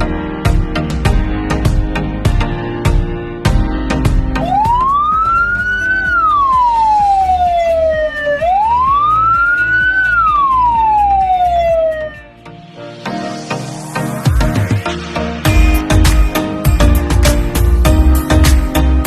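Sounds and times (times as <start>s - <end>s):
background music with beat: 0.0s - 19.0s
ambulance siren wailing: 4.4s - 12.3s.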